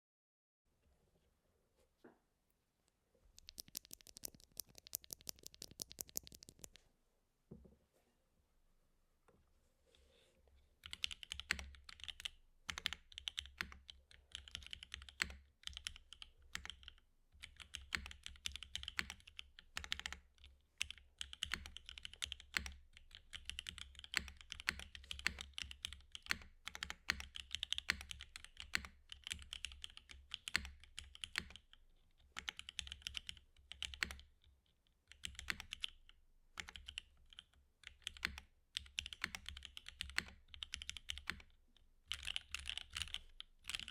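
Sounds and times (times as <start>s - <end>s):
mechanical keyboard typing: 3.4s - 6.8s, 10.8s - 34.3s, 35.1s - 36.0s, 36.6s - 41.5s, 42.1s - 43.9s.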